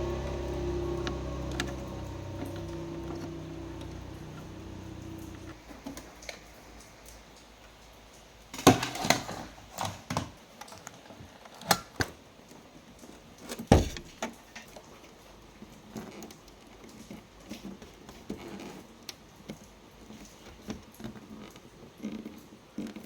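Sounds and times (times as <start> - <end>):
low steady hum: 0.0 - 5.6.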